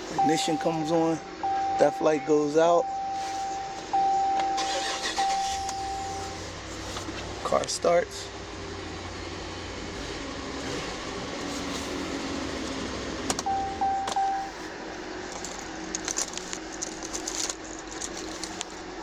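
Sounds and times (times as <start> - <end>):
pickup engine idling: 0.0 - 19.0
electronic beep: 0.1 - 6.4, 13.5 - 14.5.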